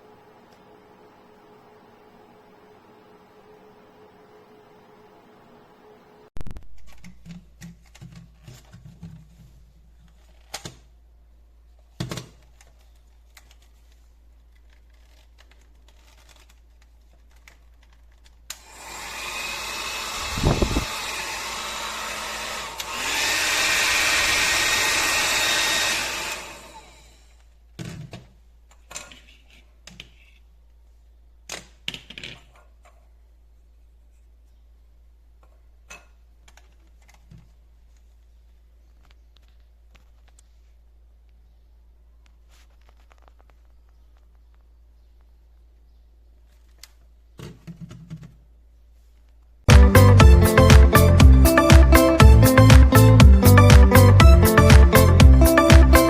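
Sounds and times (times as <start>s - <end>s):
hair dryer running: 18.6s - 27.1s, 49.8s - 56.0s.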